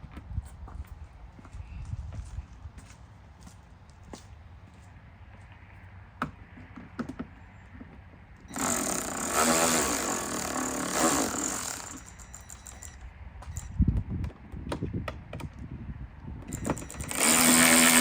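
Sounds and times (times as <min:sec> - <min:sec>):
power driver running: 0:08.5 - 0:13.7, 0:16.5 - 0:18.0
tool clicking against screw: 0:08.5 - 0:13.7, 0:16.5 - 0:18.0.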